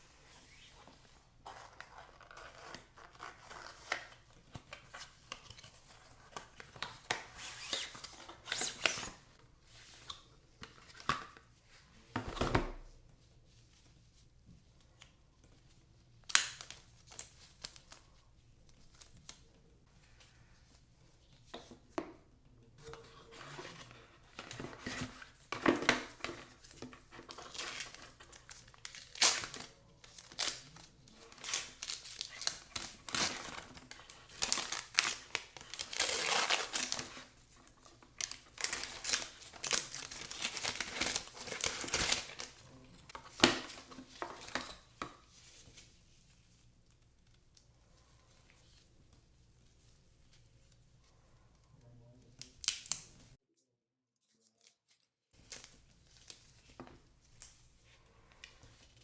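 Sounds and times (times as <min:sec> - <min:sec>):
packaging crinkling and tearing: 0:23.6 - 0:44.9.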